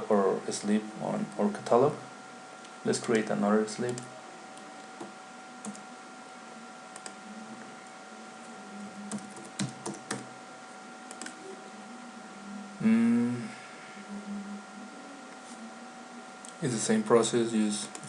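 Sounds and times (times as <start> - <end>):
faint electrical tone: 10.4 - 18.0
keyboard and mouse clicks: 11.1 - 11.4.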